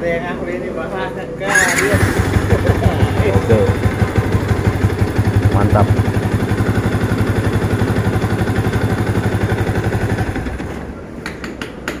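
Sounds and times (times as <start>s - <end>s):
motorcycle engine idling: 1.5s - 11.0s.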